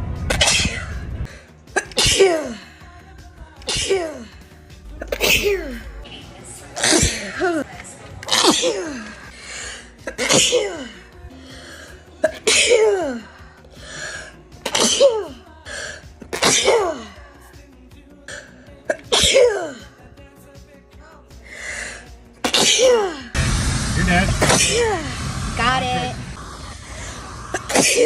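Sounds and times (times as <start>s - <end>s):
person sneezing: 0.3s - 1.0s, 1.7s - 2.6s, 3.6s - 4.3s, 5.0s - 5.8s, 6.8s - 7.5s, 10.0s - 10.9s, 14.6s - 15.4s, 16.3s - 17.1s, 22.4s - 23.3s, 27.5s - 28.0s.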